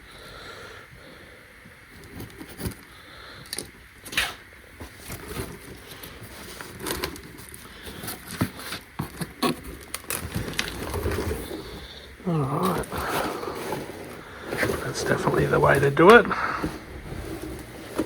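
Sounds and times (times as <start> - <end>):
cardboard crunching and rustling: 4.8 - 18.0.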